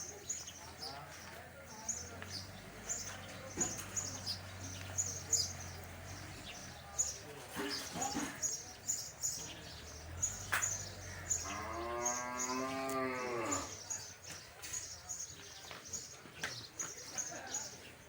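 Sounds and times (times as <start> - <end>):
small birds chirping: 0.0 - 18.0
cow mooing: 11.4 - 13.8.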